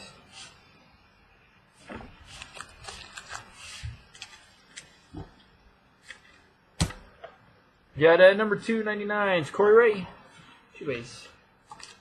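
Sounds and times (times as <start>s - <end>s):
trading cards rustling: 2.2s - 5.0s.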